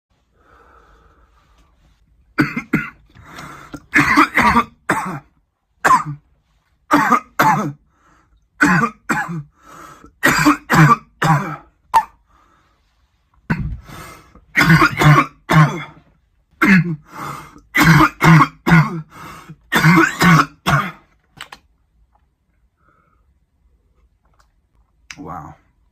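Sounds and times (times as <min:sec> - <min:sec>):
man coughing hard: 0:02.4 - 0:03.1, 0:03.9 - 0:06.2, 0:06.9 - 0:07.8, 0:08.6 - 0:09.6, 0:10.2 - 0:12.1, 0:13.5 - 0:13.9, 0:14.5 - 0:16.0, 0:16.6 - 0:17.1, 0:17.7 - 0:21.1.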